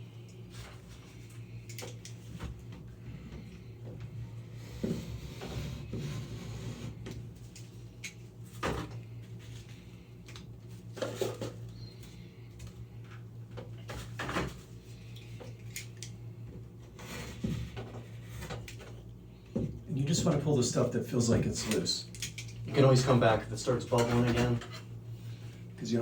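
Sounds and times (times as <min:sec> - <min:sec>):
steady low hum: 0:00.0 - 0:26.0
blade scraping ceiling paint: 0:04.5 - 0:07.0.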